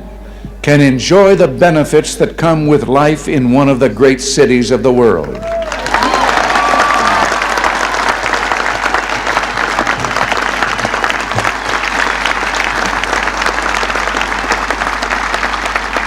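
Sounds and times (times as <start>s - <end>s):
large crowd applauding: 5.2s - 16.0s.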